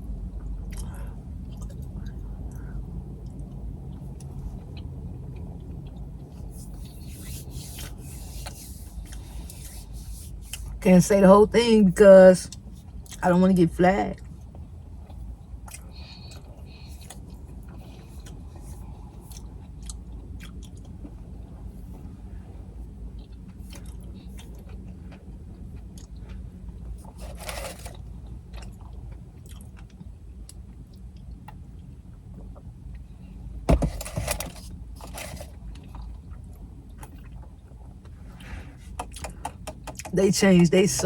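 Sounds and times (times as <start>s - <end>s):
steady low hum: 0.0s - 41.0s
chewing and biting food: 14.2s - 21.5s, 22.9s - 33.1s.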